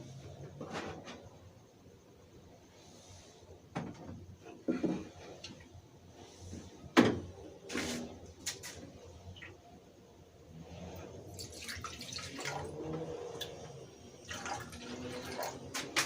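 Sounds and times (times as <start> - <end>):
containers knocking and clunking: 14.7 - 16.0.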